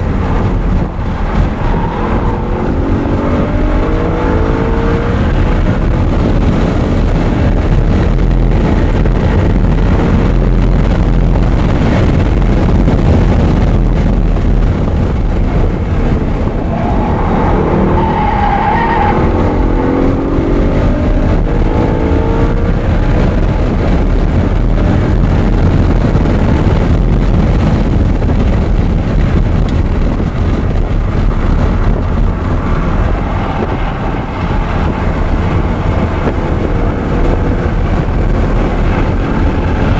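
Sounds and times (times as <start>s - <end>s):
car engine racing: 0.0s - 39.9s
wind noise: 0.0s - 39.9s
tire squeal: 16.5s - 19.6s.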